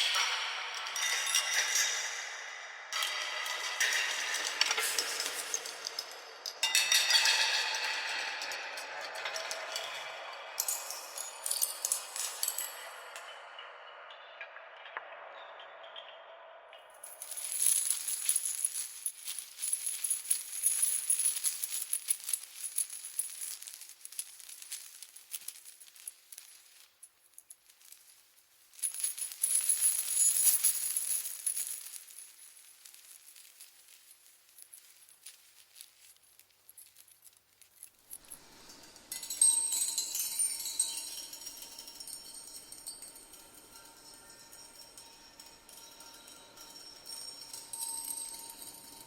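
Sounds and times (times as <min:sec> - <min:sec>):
metal chain rattling: 0:17.0 - 0:49.0.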